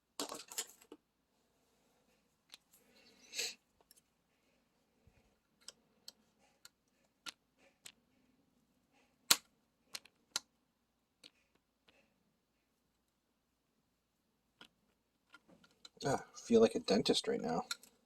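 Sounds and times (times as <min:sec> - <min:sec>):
tools clicking on metal: 0:17.6 - 0:18.0.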